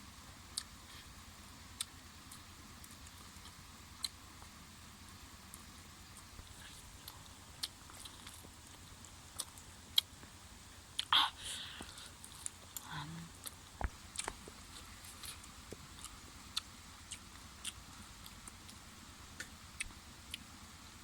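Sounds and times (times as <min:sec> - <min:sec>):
food crunching while chewed: 0:01.8 - 0:04.6, 0:05.5 - 0:10.3, 0:11.0 - 0:18.8.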